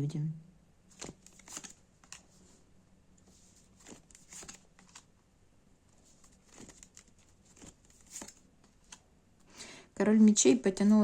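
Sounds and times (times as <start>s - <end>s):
cards being shuffled: 0.9s - 2.5s, 3.2s - 5.1s, 5.9s - 9.1s.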